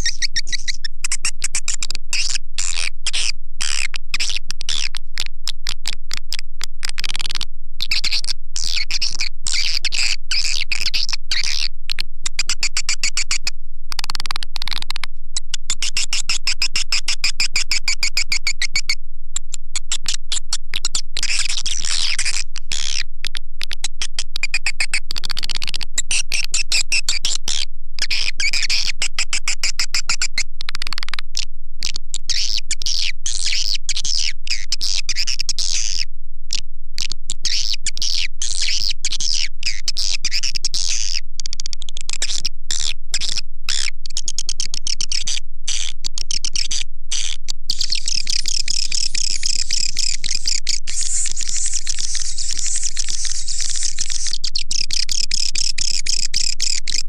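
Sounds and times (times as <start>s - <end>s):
rapid clicking twitters: 0.0s - 57.0s
recorded swiftlet chirping: 0.0s - 57.0s.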